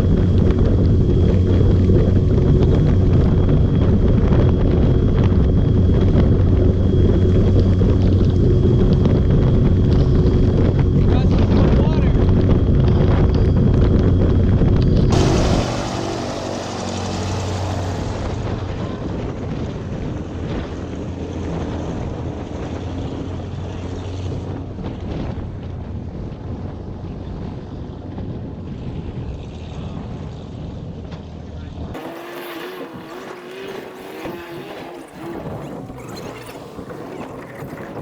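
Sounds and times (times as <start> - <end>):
outboard motor running: 0.0 - 25.3, 32.0 - 38.0
water rushing past: 15.1 - 19.0
wind rushing: 15.1 - 20.0.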